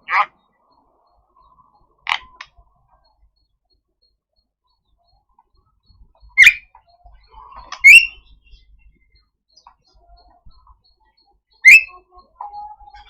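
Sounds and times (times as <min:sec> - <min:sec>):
bird giving harsh calls: 0:00.0 - 0:00.3, 0:06.4 - 0:06.7, 0:07.6 - 0:08.3, 0:11.6 - 0:11.9
faint soft bird notes: 0:00.0 - 0:13.0.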